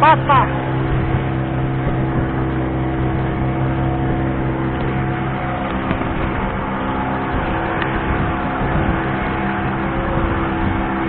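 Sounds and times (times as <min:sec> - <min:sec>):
boat engine running: 0:00.0 - 0:11.0.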